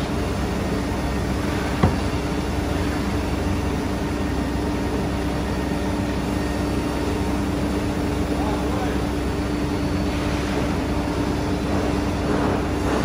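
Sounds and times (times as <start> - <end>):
sharp knock: 1.8 - 2.1.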